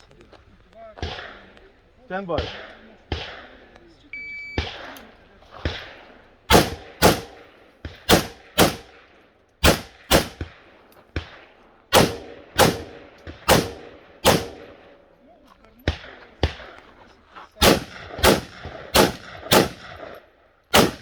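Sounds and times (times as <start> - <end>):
rifle shots with echo: 0.9 - 21.0.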